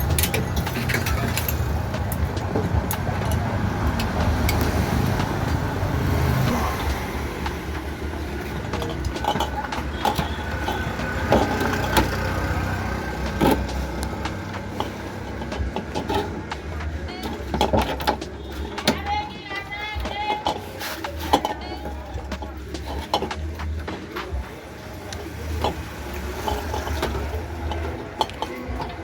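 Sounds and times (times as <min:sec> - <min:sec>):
sharp clicks and knocks: 0:00.0 - 0:19.3.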